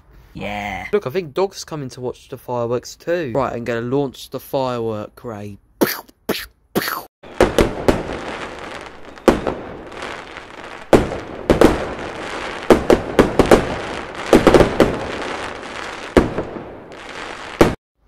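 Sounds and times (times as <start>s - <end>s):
fireworks banging: 7.2s - 17.8s.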